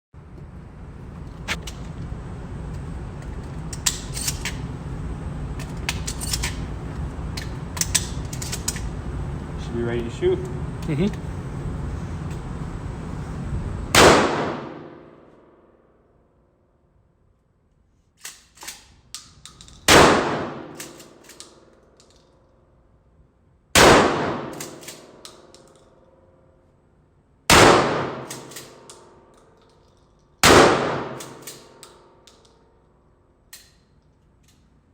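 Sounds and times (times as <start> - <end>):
metallic clicks and clatter: 3.2 - 4.7, 5.6 - 6.7, 7.3 - 8.9, 18.2 - 19.9, 20.7 - 22.5, 24.6 - 26.0, 28.2 - 30.4, 31.2 - 32.9
shotgun shots with echo: 13.9 - 15.0, 19.9 - 20.8, 23.8 - 24.6, 27.5 - 28.5, 30.4 - 31.4.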